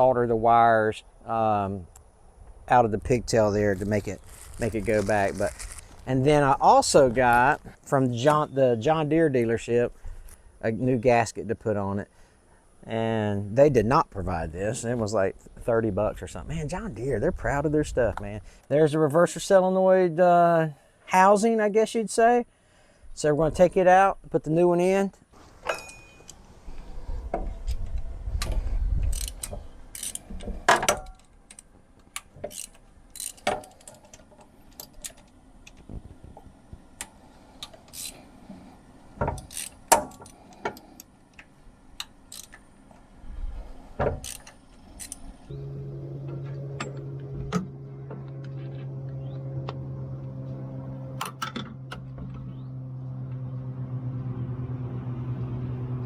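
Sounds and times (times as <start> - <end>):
low mechanical hum: 0.0 - 18.6, 25.2 - 56.0
metal tools clinking: 25.6 - 26.4.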